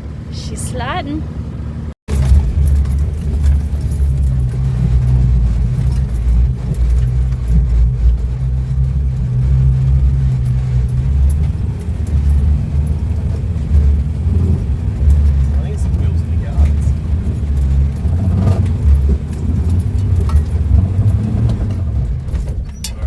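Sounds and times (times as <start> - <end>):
diesel engine rumble: 0.0 - 23.0
clicks and rattles: 2.1 - 23.0.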